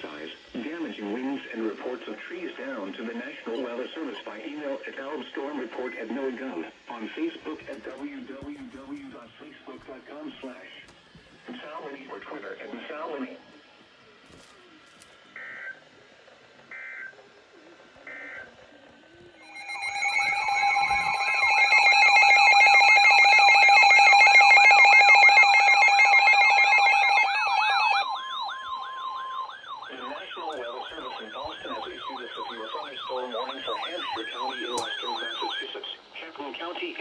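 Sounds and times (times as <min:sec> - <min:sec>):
steady alert tones: 0:19.4 - 0:35.5
warbling siren-like wails: 0:19.4 - 0:35.6
two-tone data beeps: 0:19.4 - 0:35.8.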